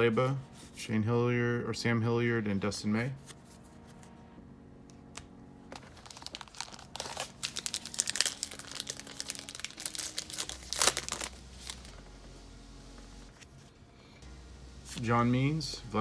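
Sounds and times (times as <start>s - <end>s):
wrapper crinkling and tearing: 5.8s - 11.9s.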